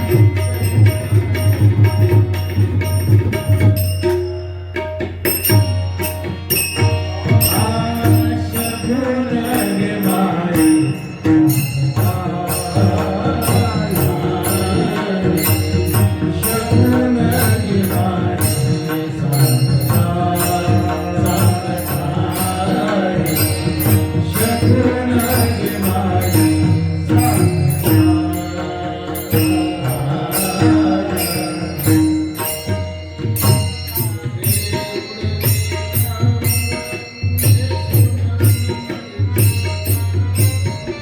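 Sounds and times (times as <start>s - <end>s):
drum accompaniment: 0.0s - 41.0s
devotional singing: 7.2s - 32.8s.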